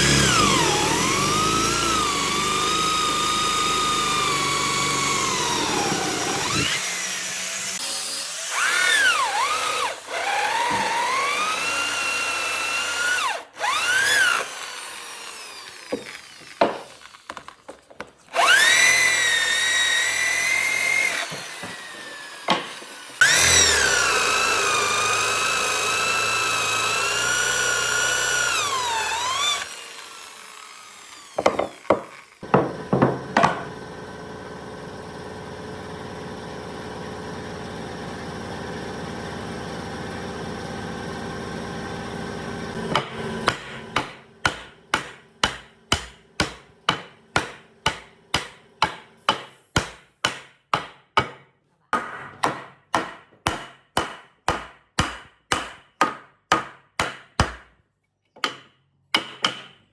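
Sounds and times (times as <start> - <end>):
power tool motor running: 0.0 - 17.6, 18.3 - 44.0
hammer striking wood: 15.8 - 17.0, 20.0 - 23.5, 31.2 - 33.9, 42.8 - 57.8, 58.4 - 59.9
knocks: 31.4 - 33.7.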